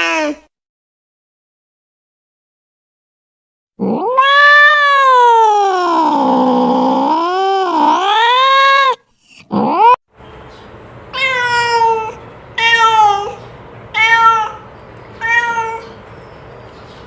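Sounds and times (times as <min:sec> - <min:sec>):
cat meowing: 0:03.8 - 0:09.0, 0:11.1 - 0:16.0.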